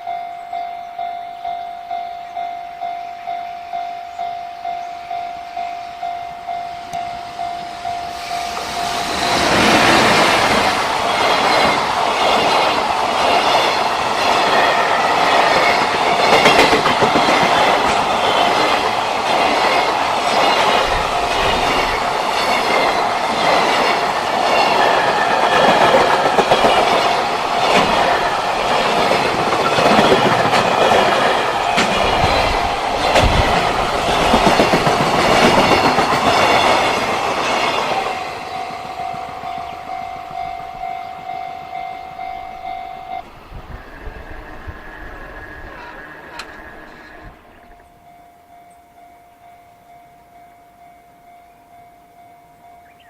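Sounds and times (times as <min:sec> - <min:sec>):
freight train wagons clattering: 0:07.3 - 0:44.9
level crossing bell ringing: 0:38.2 - 0:43.2.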